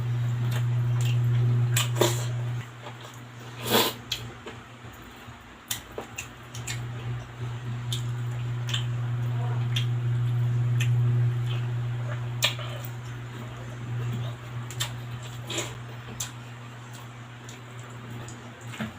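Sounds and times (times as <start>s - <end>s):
steady low hum: 0.0s - 18.9s
chewing clicks and smacks: 4.1s - 6.9s, 7.9s - 8.9s, 14.7s - 18.9s.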